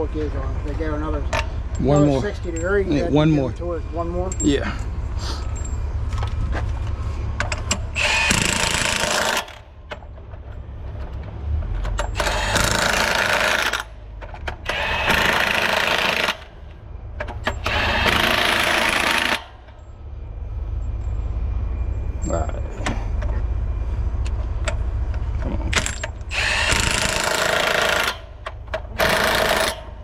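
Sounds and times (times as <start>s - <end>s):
impact wrench hammering bolts: 7.4s - 10.1s, 11.8s - 16.6s, 17.2s - 19.8s, 25.7s - 30.0s.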